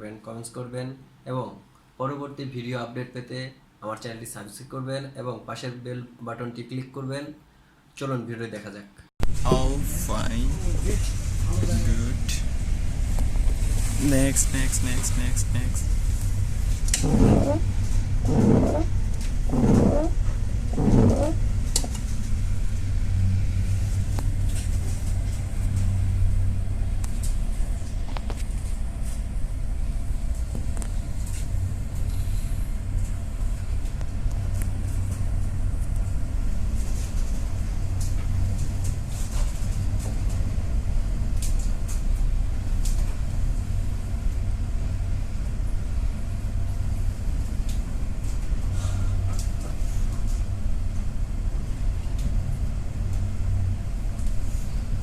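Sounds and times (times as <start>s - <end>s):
ship engine droning: 9.3s - 38.7s.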